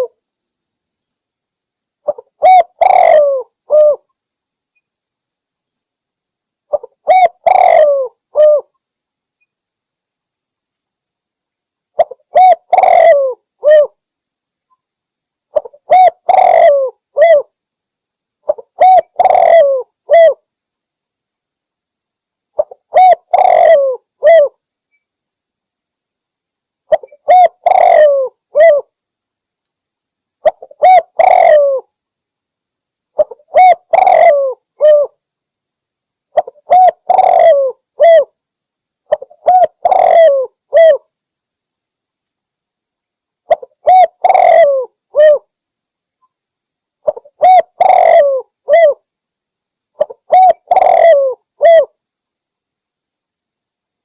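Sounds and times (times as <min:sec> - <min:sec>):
dove cooing: 0:02.1 - 0:04.1, 0:06.7 - 0:08.7, 0:12.0 - 0:14.0, 0:15.5 - 0:17.5, 0:18.5 - 0:20.4, 0:22.6 - 0:24.6, 0:26.9 - 0:28.9, 0:30.4 - 0:31.9, 0:33.2 - 0:35.2, 0:36.4 - 0:38.3, 0:39.1 - 0:41.0, 0:43.5 - 0:45.5, 0:47.0 - 0:49.0, 0:50.0 - 0:51.9.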